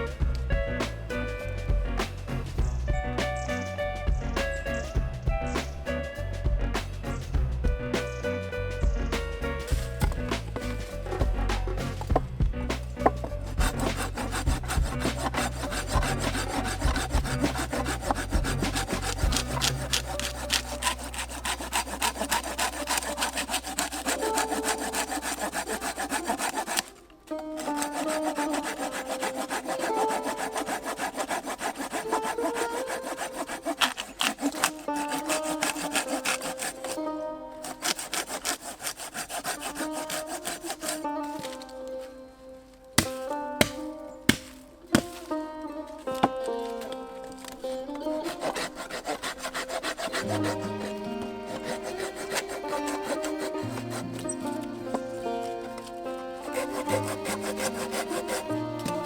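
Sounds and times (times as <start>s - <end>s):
hand saw cutting wood: 9.6s - 12.2s, 12.8s - 37.0s, 37.6s - 41.7s, 43.0s - 45.4s, 46.1s - 59.0s.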